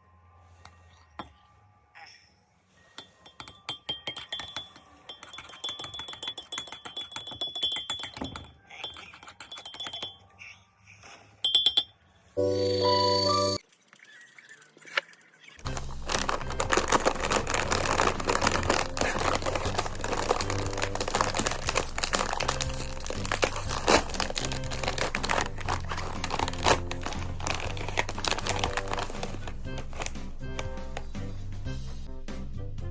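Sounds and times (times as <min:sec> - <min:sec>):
crinkling and clicking: 0:14.9 - 0:31.2
background music with bass: 0:15.7 - 0:32.9.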